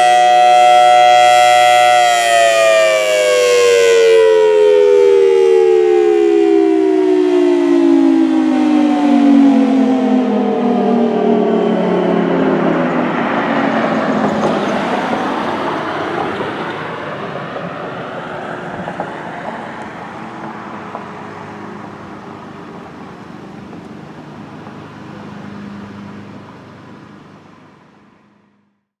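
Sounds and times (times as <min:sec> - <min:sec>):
warning siren winding down: 0:00.0 - 0:28.6.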